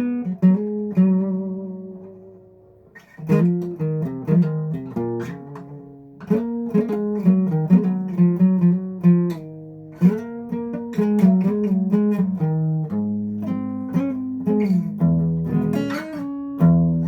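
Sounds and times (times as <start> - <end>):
guitar plucked notes and chords: 0.0 - 17.0.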